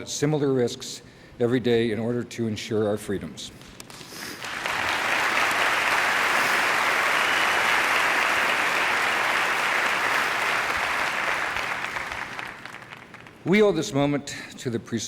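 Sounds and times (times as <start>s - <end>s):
large audience applauding: 4.4s - 13.4s.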